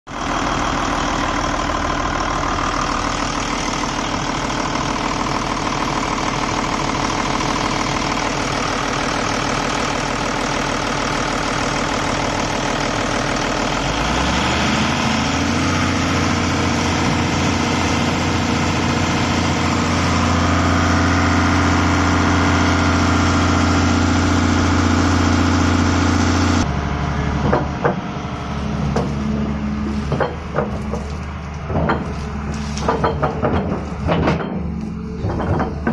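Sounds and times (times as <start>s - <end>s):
excavator diesel engine: 0.1s - 35.9s
sharp knocks: 31.7s - 32.2s, 32.8s - 35.9s.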